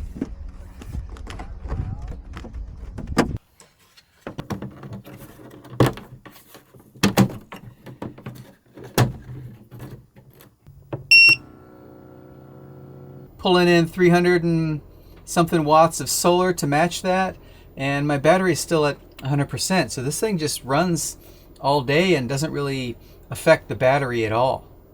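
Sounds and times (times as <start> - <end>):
knocks and rattles: 4.2 - 11.1
short electronic beep: 11.1 - 11.4.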